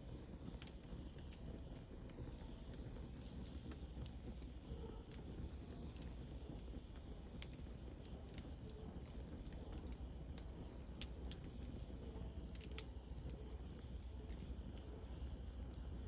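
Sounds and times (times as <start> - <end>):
fire crackling: 0.0 - 16.0
low rumble of flames: 0.0 - 16.0.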